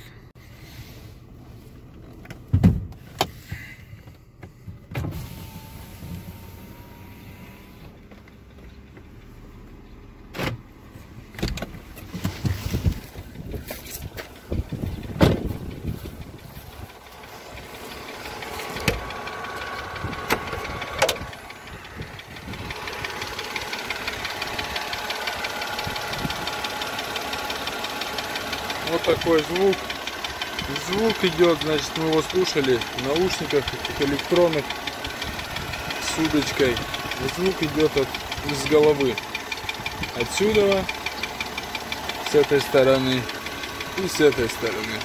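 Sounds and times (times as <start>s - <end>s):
sharp engine knocks: 11.3s - 16.4s, 17.0s - 24.6s
petrol engine running: 11.8s - 45.0s
fast engine ticking: 12.0s - 45.0s.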